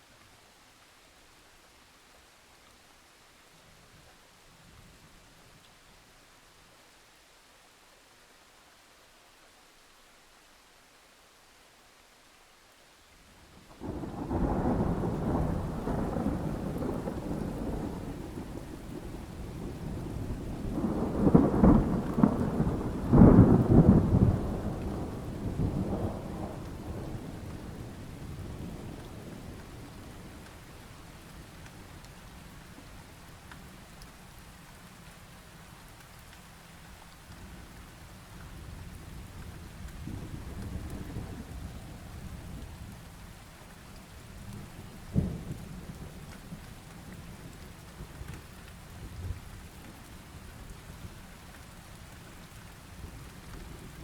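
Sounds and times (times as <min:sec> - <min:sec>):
rain hissing: 0:13.7 - 0:54.0
thunder rumbling: 0:13.8 - 0:30.8.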